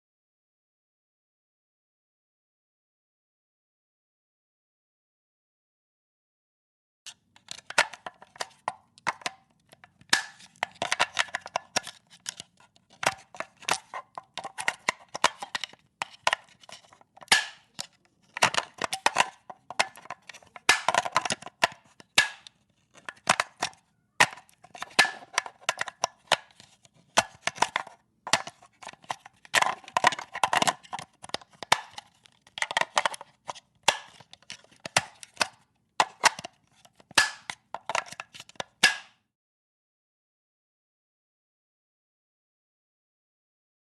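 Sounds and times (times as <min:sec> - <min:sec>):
plastic clicks and snaps: 0:07.1 - 0:39.2.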